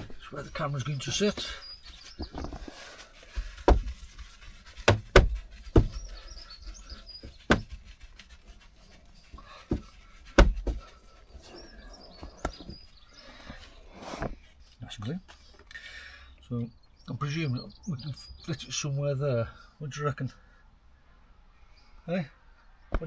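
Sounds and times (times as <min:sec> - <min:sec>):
handling knocks and clicks: 0:09.3 - 0:11.0, 0:12.1 - 0:12.8.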